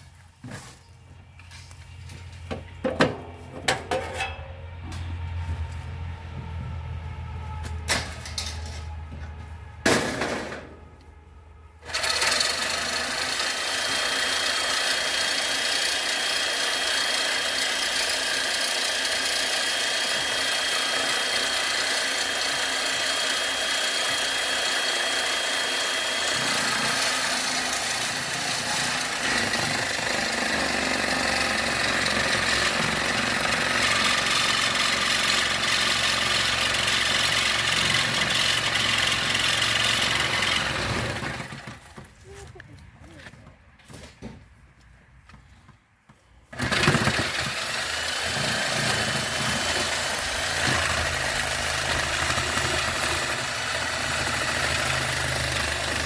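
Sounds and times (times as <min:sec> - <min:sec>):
power tool running: 0:11.8 - 0:42.0, 0:46.5 - 0:56.0.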